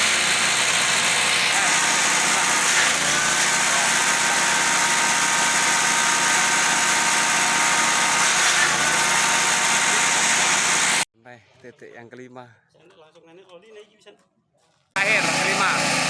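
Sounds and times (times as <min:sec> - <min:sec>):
vehicle engine noise: 0:00.0 - 0:04.3, 0:15.0 - 0:16.0.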